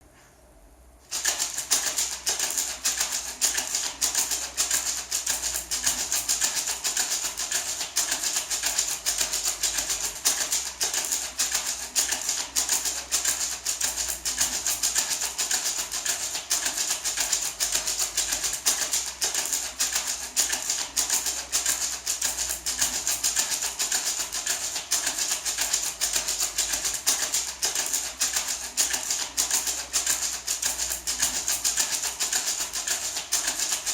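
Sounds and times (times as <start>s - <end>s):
maraca shaken steadily: 1.0s - 33.9s.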